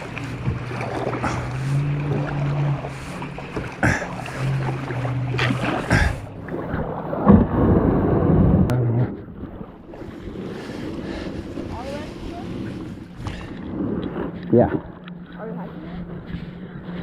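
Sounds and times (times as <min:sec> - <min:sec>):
paddle strikes on water: 0:00.0 - 0:06.6
water splashing and sloshing: 0:00.0 - 0:17.0.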